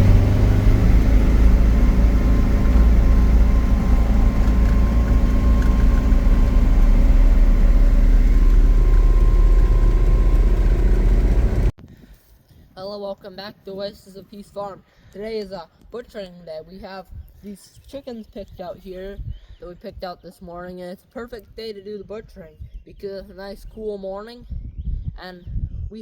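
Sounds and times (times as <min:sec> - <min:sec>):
motor vehicle engine rumble: 0:00.0 - 0:11.8
road noise: 0:00.0 - 0:11.8.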